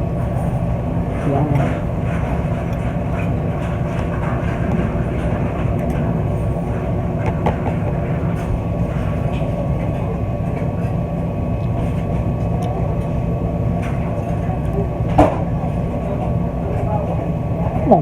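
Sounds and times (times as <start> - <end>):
faint constant hum: 0.0 - 18.0
low mechanical rumble: 0.0 - 18.0.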